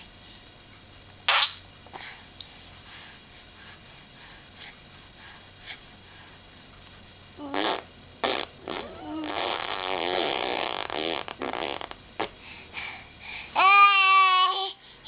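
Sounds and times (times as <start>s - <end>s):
baby blowing raspberries: 7.4s - 12.9s.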